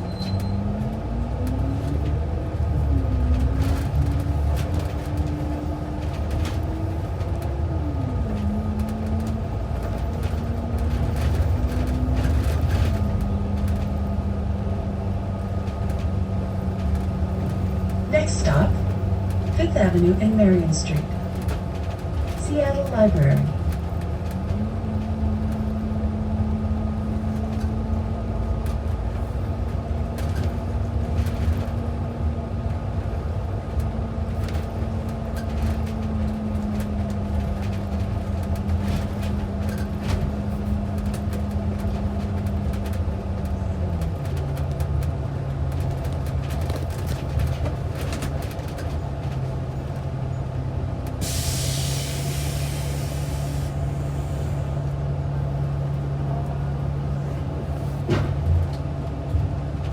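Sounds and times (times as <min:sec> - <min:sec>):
bus engine drone: 0:00.0 - 0:59.9
air hiss: 0:51.2 - 0:53.9.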